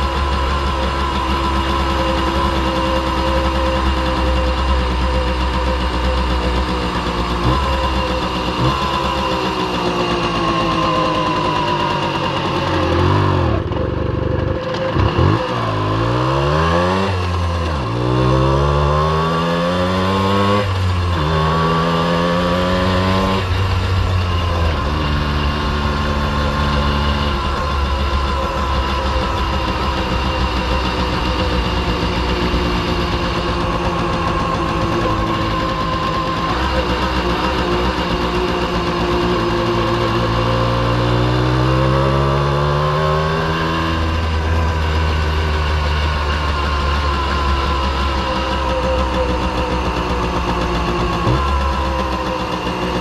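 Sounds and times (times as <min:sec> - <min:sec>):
moped engine shifting gears: 0:00.0 - 0:53.0.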